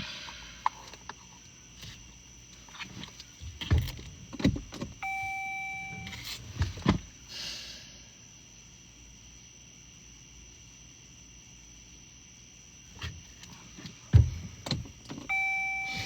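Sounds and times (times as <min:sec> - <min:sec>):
dull thumps and knocks in car: 0:02.8 - 0:07.1, 0:13.0 - 0:16.0
electronic beep: 0:05.0 - 0:06.2, 0:15.3 - 0:16.0.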